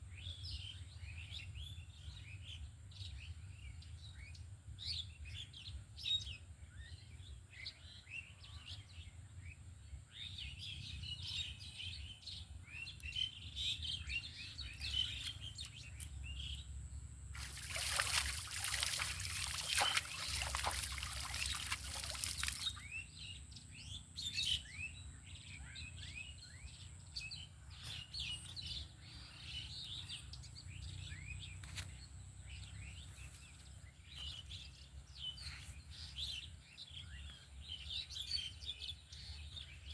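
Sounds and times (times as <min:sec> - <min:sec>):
small birds chirping: 0:09.4 - 0:39.9
water splashing and pouring: 0:17.4 - 0:22.9.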